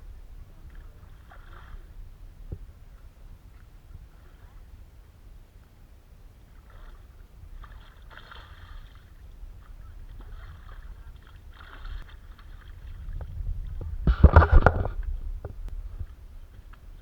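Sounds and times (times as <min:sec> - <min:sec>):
wind rumble on microphone: 0:00.0 - 0:17.0
water sloshing and splashing: 0:00.6 - 0:02.6, 0:06.5 - 0:17.0.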